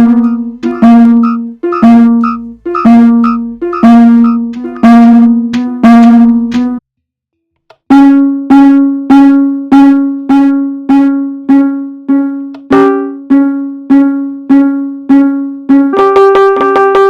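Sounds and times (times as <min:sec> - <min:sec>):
fire alarm chime dinging: 0:00.2 - 0:05.1.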